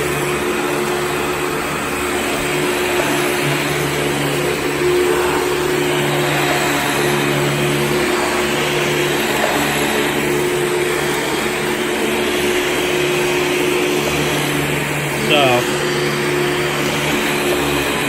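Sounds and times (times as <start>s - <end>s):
vacuum cleaner running: 0.0s - 18.0s.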